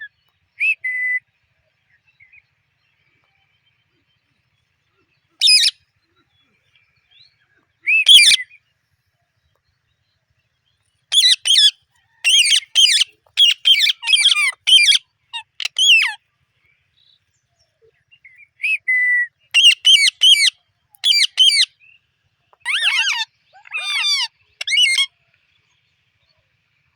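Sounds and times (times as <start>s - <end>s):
parakeet calling harshly: 5.4s - 5.8s, 7.9s - 8.4s, 11.1s - 16.2s, 19.6s - 21.7s, 22.6s - 25.1s.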